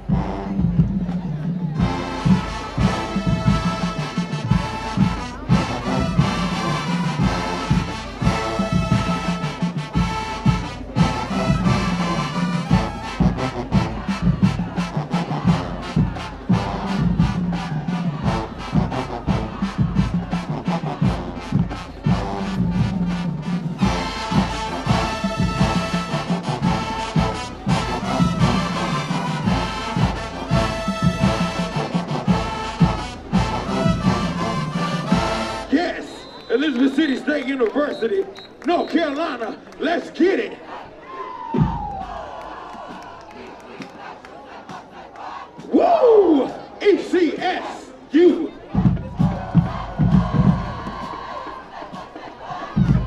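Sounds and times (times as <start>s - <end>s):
brass chords: 0.0s - 37.3s, 48.5s - 53.0s
drum hits: 48.8s - 51.4s.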